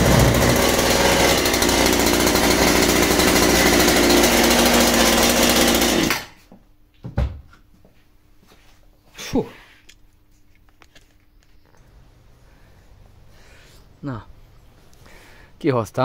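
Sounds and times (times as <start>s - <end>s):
chainsaw engine running: 0.0s - 6.3s.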